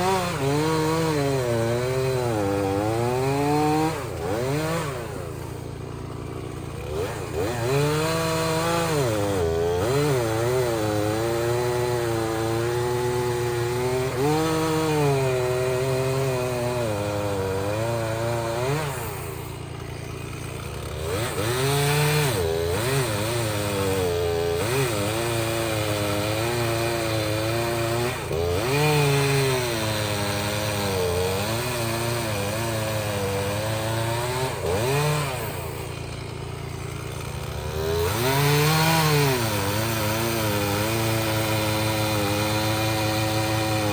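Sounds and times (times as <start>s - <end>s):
chainsaw running at high revs: 0.0s - 43.9s.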